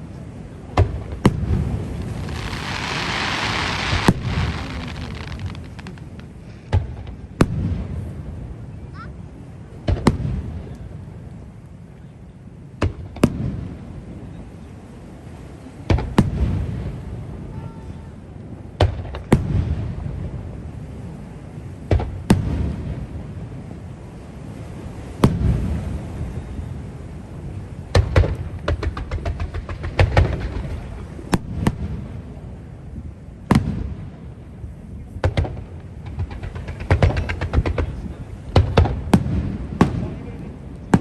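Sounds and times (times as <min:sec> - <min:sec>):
low rolling rumble: 0:01.3 - 0:06.7
firework shells bursting: 0:01.4 - 0:06.5.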